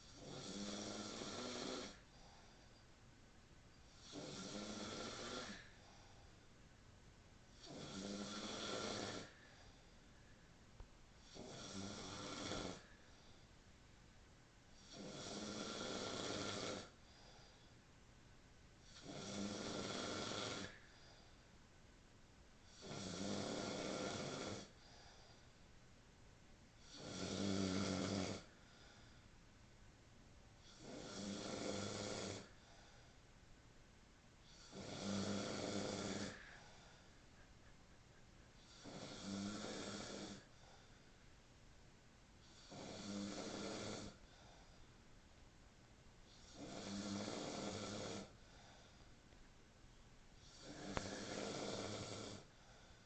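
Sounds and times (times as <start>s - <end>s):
person snoring: 0.0s - 2.6s, 3.9s - 6.2s, 7.5s - 9.9s, 11.2s - 13.4s, 14.8s - 17.7s, 18.8s - 21.4s, 22.6s - 25.5s, 26.8s - 29.2s, 30.6s - 33.1s, 34.4s - 37.2s, 38.6s - 41.1s, 42.4s - 44.9s, 46.3s - 49.0s, 50.4s - 53.0s
faint breathing: 1.3s - 3.0s, 3.7s - 6.6s, 7.6s - 10.6s, 11.2s - 13.7s, 16.4s - 18.0s, 20.6s - 21.6s, 24.2s - 25.7s, 28.4s - 29.5s, 32.4s - 33.3s, 34.4s - 41.4s, 44.0s - 45.2s, 48.2s - 49.4s, 50.4s - 53.0s.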